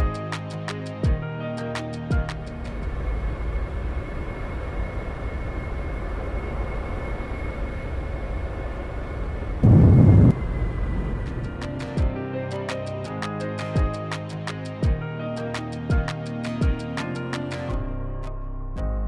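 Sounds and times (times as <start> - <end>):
jet engine roar with whine: 2.7 - 11.6.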